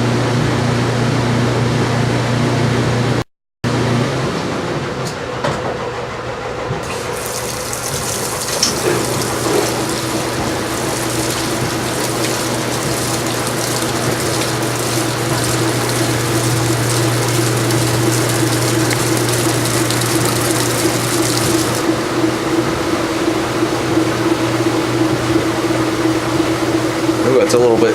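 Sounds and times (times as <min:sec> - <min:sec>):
washing machine motor and pump: 0:00.0 - 0:27.9
water rushing out: 0:06.8 - 0:22.8.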